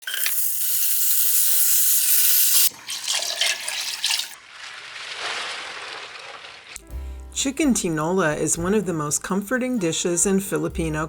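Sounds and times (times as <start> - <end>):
water running from kitchen tap: 0.0 - 6.8
splashing water: 2.6 - 6.9.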